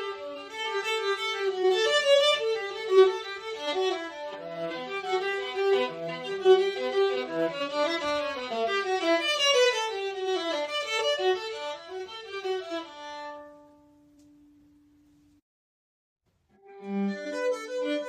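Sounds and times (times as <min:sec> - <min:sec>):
viola playing melody: 0:00.0 - 0:13.9, 0:16.6 - 0:18.0.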